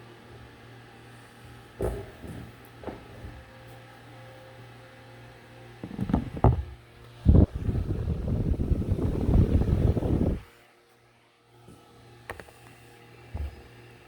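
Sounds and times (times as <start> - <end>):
fan motor hum: 0.0 - 10.7
wind buffeting microphone: 7.2 - 10.4.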